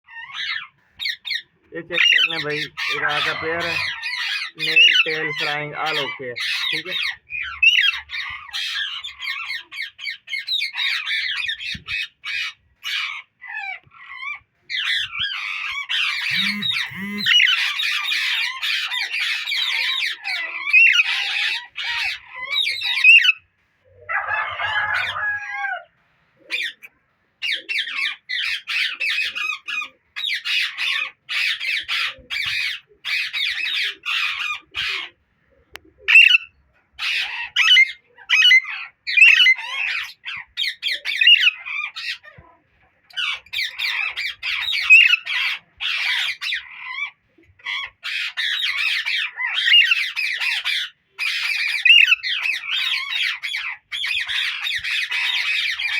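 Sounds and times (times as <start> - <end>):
parakeets squawking: 0.1 - 10.2, 14.0 - 23.3, 43.1 - 55.9.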